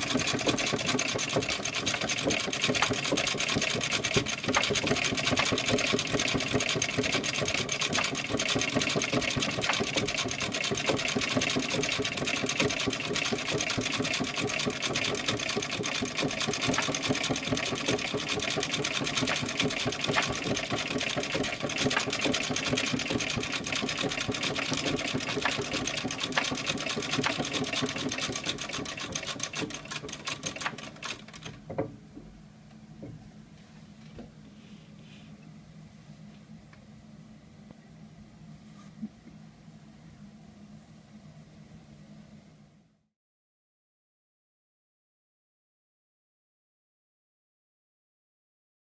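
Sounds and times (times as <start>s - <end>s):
sewing machine clattering: 0.0s - 31.8s.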